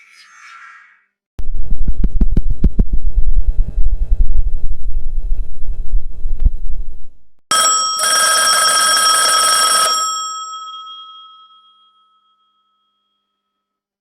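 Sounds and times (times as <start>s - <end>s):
rotary telephone bell ringing: 7.5s - 13.3s.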